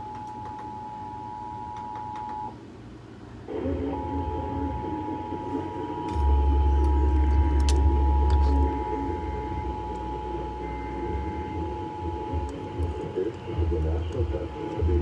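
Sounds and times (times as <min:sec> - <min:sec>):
loud low hum: 0:03.4 - 0:15.0.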